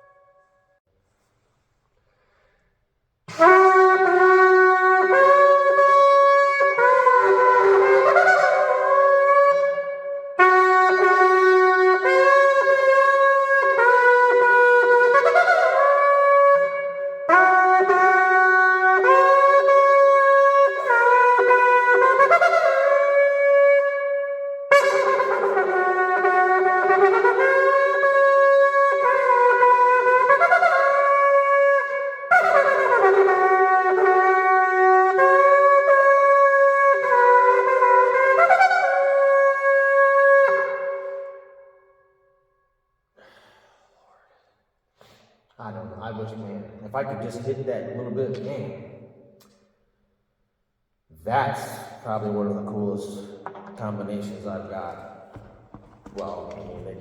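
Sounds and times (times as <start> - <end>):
shofar blowing sustained notes: 3.3 - 41.9.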